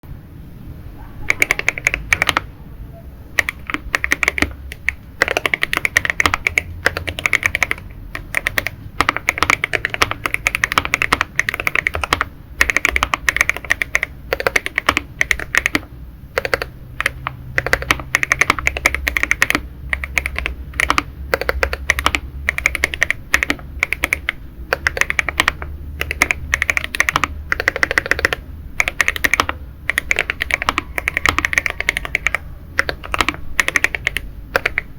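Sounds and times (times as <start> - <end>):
mechanical keyboard typing: 1.3 - 2.5, 3.3 - 34.9.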